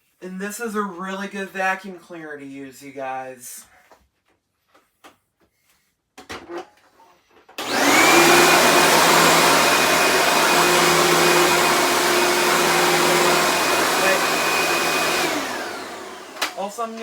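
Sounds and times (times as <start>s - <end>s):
vacuum cleaner motor whining: 7.6s - 17.0s.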